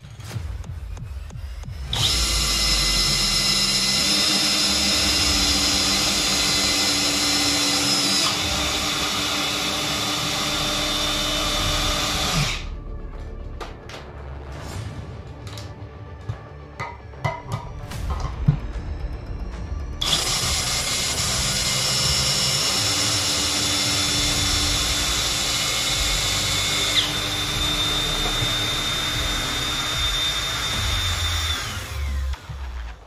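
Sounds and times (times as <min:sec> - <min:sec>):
power tool motor whining: 0:01.8 - 0:12.7, 0:20.0 - 0:33.0.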